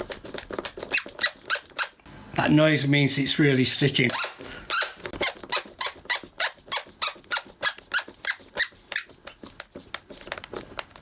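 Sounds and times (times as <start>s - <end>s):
wood screw squeaking: 0.4s - 2.0s, 4.1s - 9.4s.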